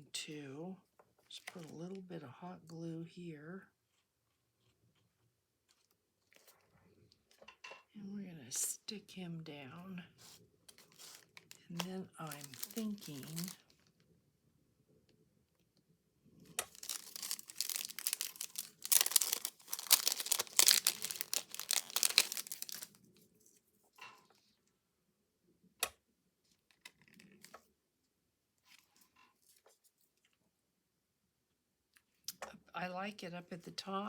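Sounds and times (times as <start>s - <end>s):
craft materials rustling: 10.2s - 13.9s, 16.5s - 23.7s.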